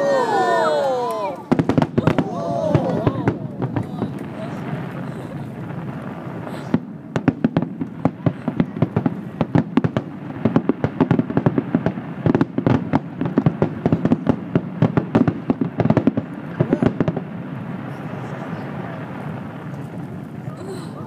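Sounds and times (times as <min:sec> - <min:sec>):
fireworks banging: 0:00.0 - 0:21.0
firework hissing: 0:01.4 - 0:09.4, 0:16.0 - 0:21.0.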